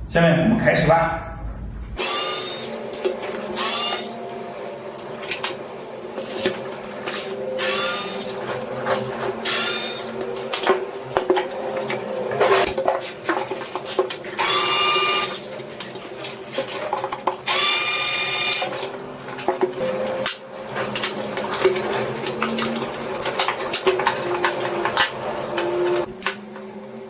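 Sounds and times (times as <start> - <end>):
handheld power tool whining: 2.0 - 4.2, 14.4 - 15.4, 17.5 - 18.8.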